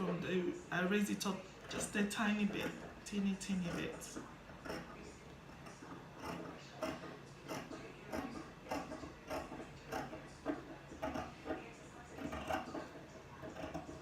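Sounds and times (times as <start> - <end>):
scissors cutting fabric: 5.7 - 14.0.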